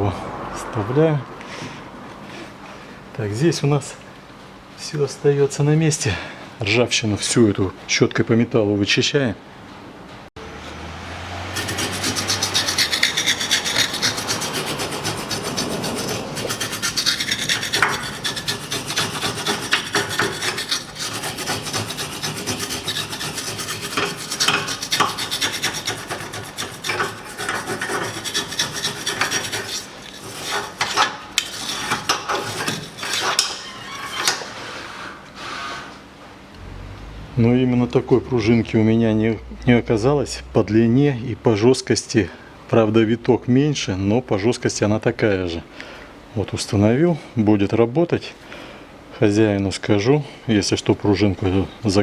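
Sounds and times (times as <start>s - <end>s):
wire brush scrubbing steel: 11.5s - 33.6s.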